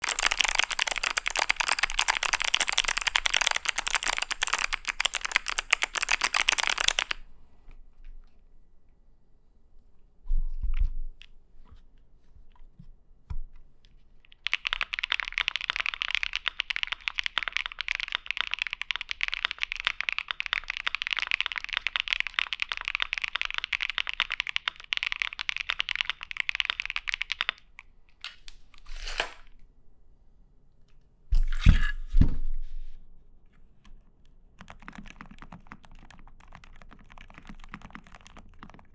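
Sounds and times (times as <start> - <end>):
typing on mechanical keyboard: 0.0 - 7.2, 14.3 - 27.9, 34.5 - 38.9.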